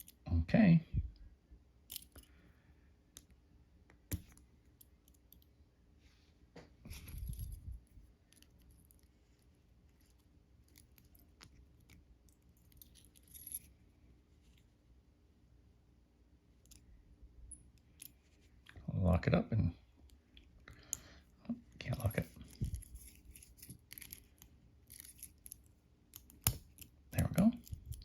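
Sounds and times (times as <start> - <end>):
padlock parts clicking and tapping: 1.9 - 2.3, 3.2 - 5.5, 17.5 - 18.2, 22.1 - 28.0.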